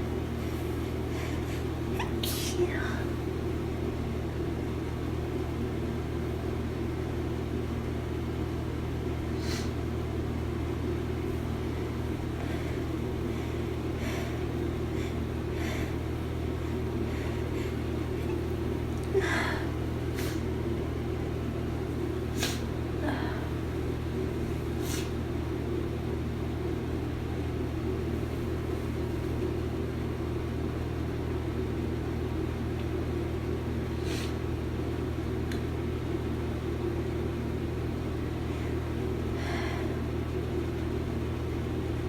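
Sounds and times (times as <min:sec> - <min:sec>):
steady low hum: 0:00.0 - 0:42.0
person sniffling: 0:19.2 - 0:20.5, 0:22.4 - 0:23.6, 0:24.8 - 0:25.2, 0:34.0 - 0:34.4.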